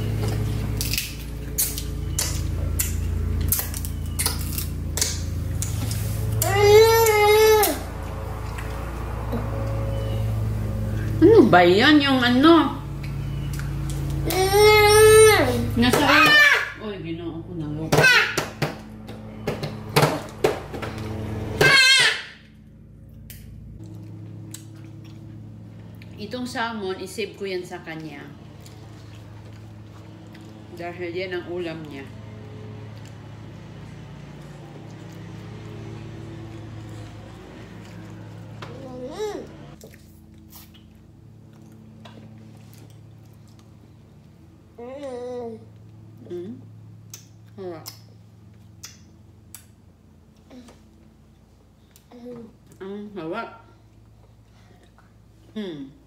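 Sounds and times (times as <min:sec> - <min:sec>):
steady low hum: 0:00.0 - 0:56.0
baby wailing: 0:06.4 - 0:07.9, 0:14.2 - 0:16.8, 0:21.6 - 0:22.4.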